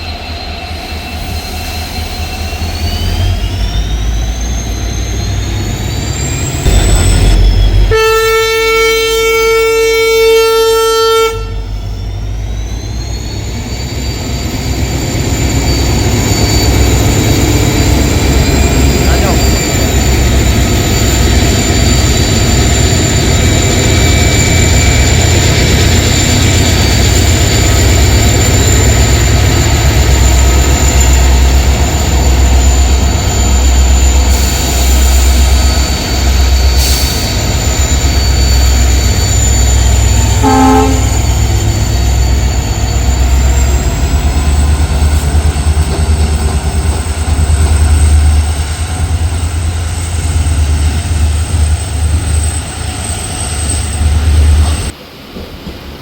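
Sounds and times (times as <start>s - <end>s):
train rumbling: 0.0s - 56.0s
locomotive horn toot: 6.7s - 11.8s, 40.4s - 41.5s.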